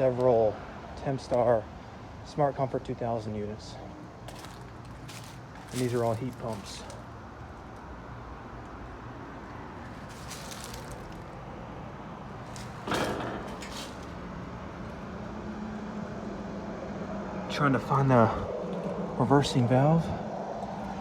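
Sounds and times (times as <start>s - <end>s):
heat pump fan rush: 0.0s - 21.0s
loud thump: 12.6s - 14.1s.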